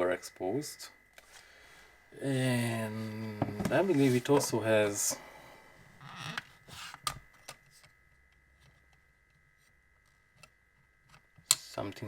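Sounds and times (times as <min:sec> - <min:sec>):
faint steady high tone: 0:00.0 - 0:06.0.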